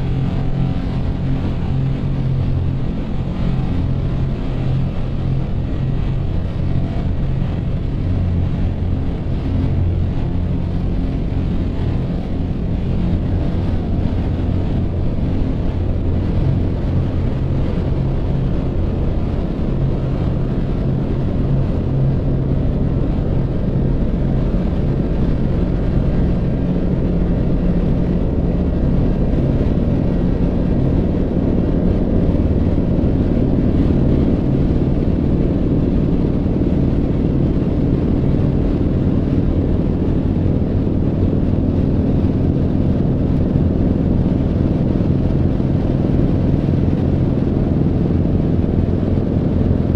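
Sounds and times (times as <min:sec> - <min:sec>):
vehicle engine droning: 0:00.0 - 0:49.9.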